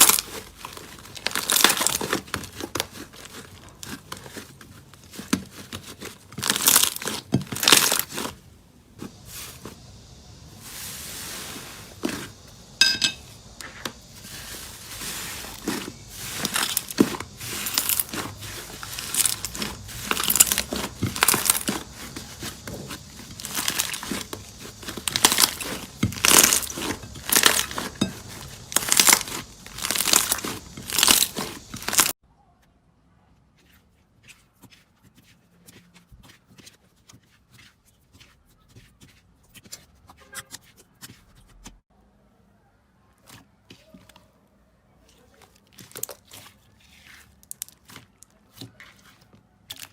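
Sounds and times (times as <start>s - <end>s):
slime crackling: 0.0s - 8.4s, 14.2s - 32.2s.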